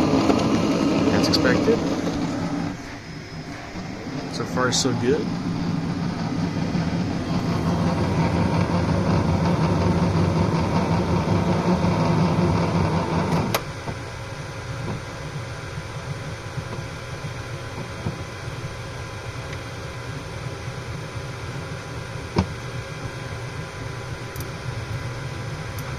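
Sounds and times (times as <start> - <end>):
feeder motor running: 0.0 - 25.9
quiet steady whir: 0.0 - 25.9
motor stopping click: 7.3 - 13.7.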